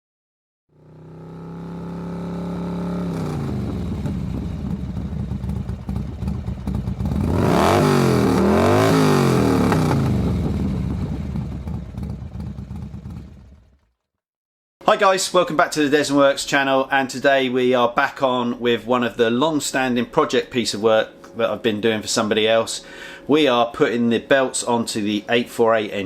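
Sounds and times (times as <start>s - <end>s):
motorcycle engine revving: 0.7s - 14.1s.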